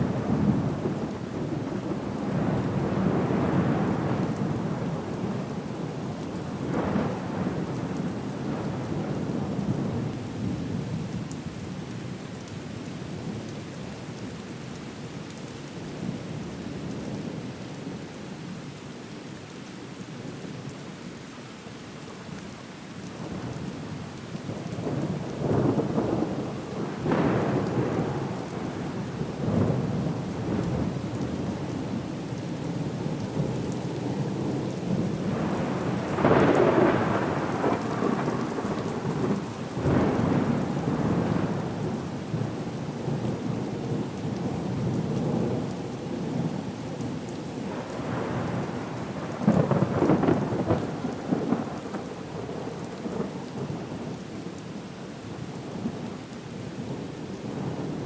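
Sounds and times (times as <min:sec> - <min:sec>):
rain hiss: 0:00.0 - 0:58.0
deep thunder rumbling: 0:34.9 - 0:42.4, 0:47.7 - 0:53.8.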